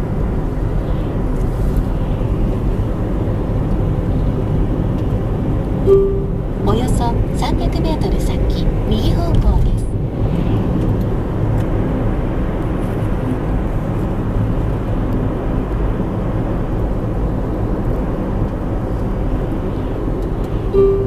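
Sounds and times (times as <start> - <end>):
car engine and road noise: 0.0 - 21.0.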